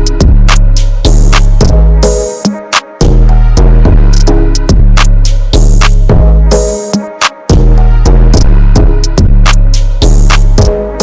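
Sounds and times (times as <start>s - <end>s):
electronic music with heavy bass: 0.0s - 11.0s.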